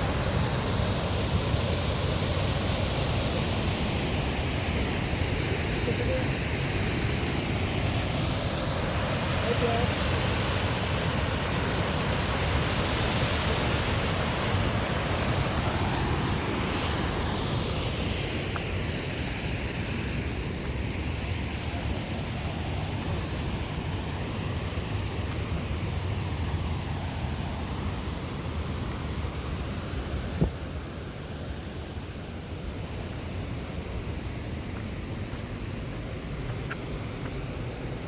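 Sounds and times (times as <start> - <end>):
waterfall rushing: 0.0 - 29.6.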